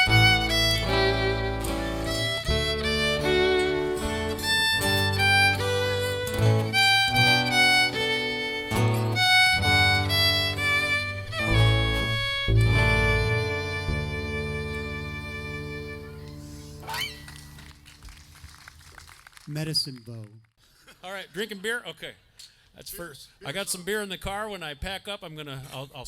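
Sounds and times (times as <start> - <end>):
bass line: 0.0 - 17.8
fiddle playing melody: 0.0 - 17.8
guitar: 0.0 - 18.2.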